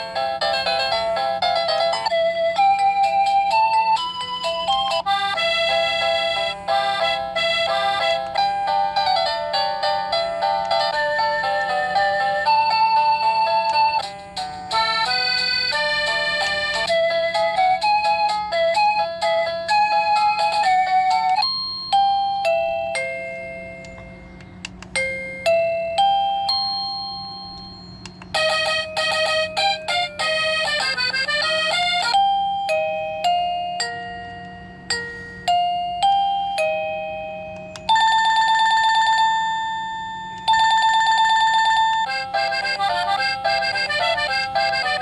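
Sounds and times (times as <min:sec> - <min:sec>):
electronic doorbell chime tunes: 0:00.0 - 0:24.2, 0:25.0 - 0:45.0
trilling doorbell ring: 0:21.4 - 0:23.8, 0:25.0 - 0:30.2, 0:32.0 - 0:45.0.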